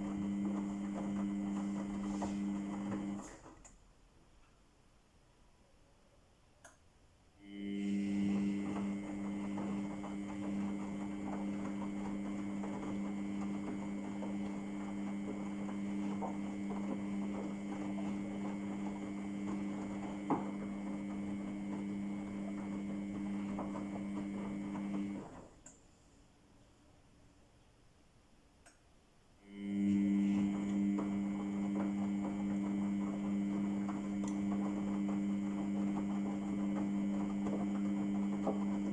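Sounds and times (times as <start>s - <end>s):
washing machine pump humming: 0.0s - 3.9s, 7.4s - 25.8s, 29.4s - 38.9s
click: 3.2s - 3.8s, 6.6s - 6.9s, 25.6s - 25.8s, 28.6s - 28.8s, 34.2s - 34.4s.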